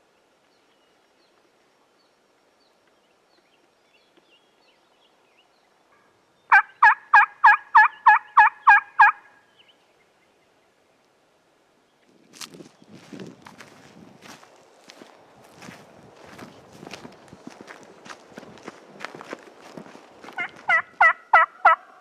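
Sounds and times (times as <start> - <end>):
turkey yelps: 6.5 - 9.4, 20.4 - 22.0.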